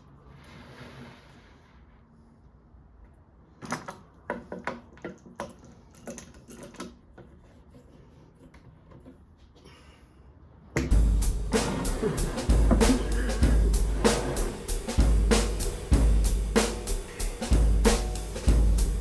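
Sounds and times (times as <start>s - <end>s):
music with drums: 10.9s - 19.0s.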